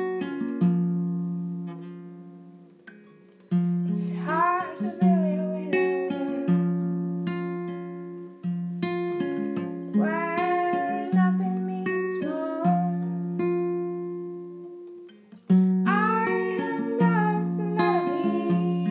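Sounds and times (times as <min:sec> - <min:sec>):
acoustic guitar strumming: 0:00.0 - 0:18.9
person singing: 0:03.9 - 0:06.7, 0:09.9 - 0:13.2, 0:15.8 - 0:18.9.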